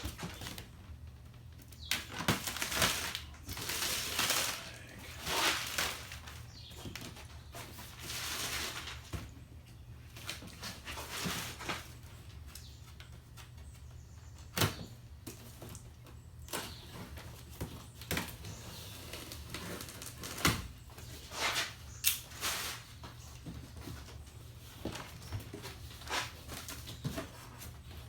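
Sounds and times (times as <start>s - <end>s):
packing scraping and rustling: 1.9s - 9.3s, 16.4s - 28.0s.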